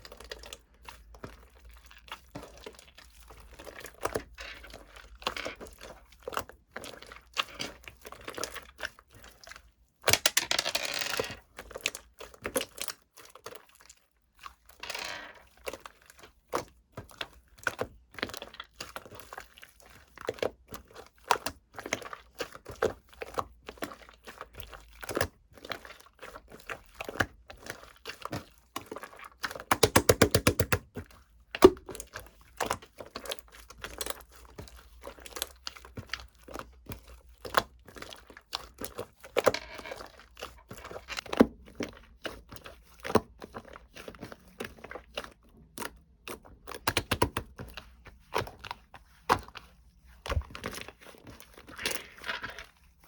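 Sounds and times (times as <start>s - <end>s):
clicks and taps: 29.7s - 30.8s, 31.6s - 32.0s, 46.8s - 47.5s.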